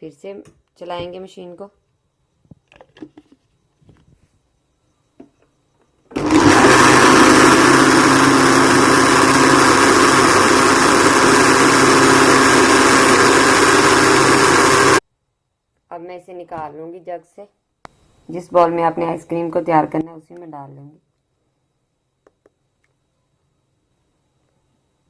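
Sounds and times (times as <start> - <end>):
mixer grinder motor running: 6.1 - 15.0.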